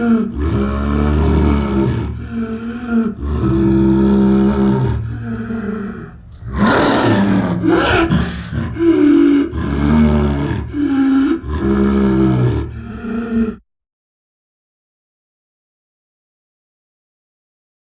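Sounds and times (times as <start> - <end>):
deep creature roars: 0.0 - 13.6
harsh rasping roar: 0.0 - 13.6.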